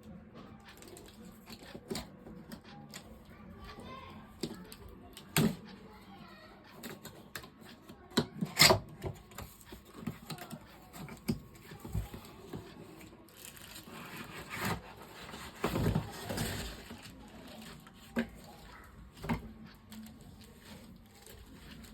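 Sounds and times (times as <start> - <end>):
rubbing and scraping: 11.6 - 18.8.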